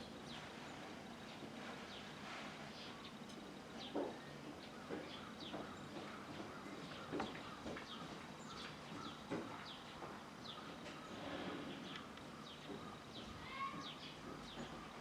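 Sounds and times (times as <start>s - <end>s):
small birds chirping: 3.8s - 15.0s.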